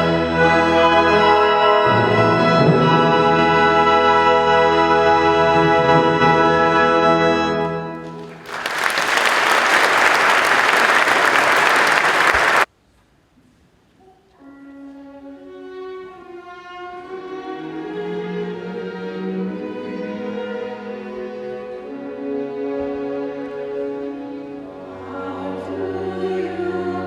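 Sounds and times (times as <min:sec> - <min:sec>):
audience applause: 0:08.0 - 0:12.7.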